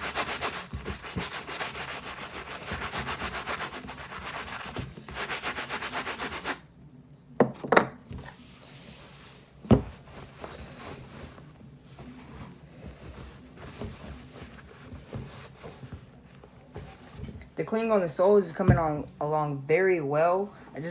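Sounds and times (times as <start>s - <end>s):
brush scrubbing rubber sole: 0.0s - 6.6s.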